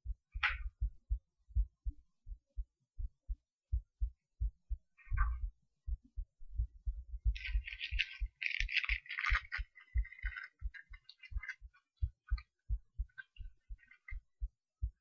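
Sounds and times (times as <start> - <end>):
heartbeat through stethoscope: 0.0 - 15.0
scratchy rustling noise: 7.4 - 12.4.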